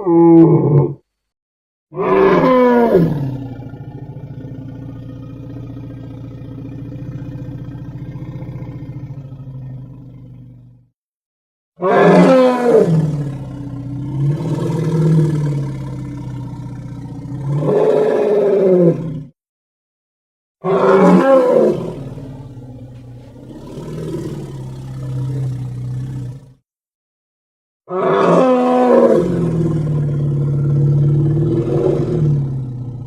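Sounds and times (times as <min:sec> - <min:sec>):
monster roars: 0:00.0 - 0:01.0, 0:01.9 - 0:04.4, 0:11.8 - 0:19.3, 0:20.6 - 0:22.4, 0:23.4 - 0:26.5, 0:27.9 - 0:33.0.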